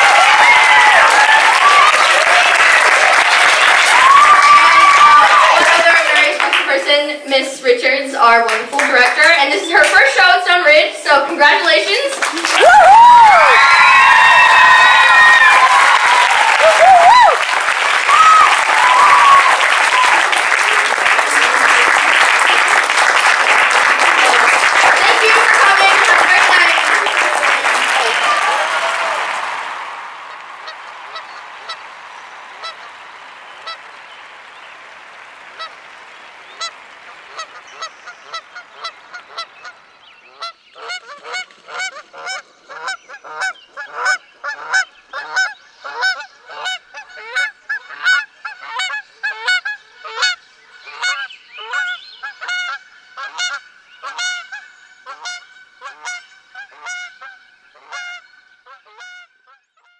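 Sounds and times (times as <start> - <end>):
applause: 0.0 - 6.8, 8.5 - 10.2, 12.0 - 39.2
geese honking: 30.2 - 59.9.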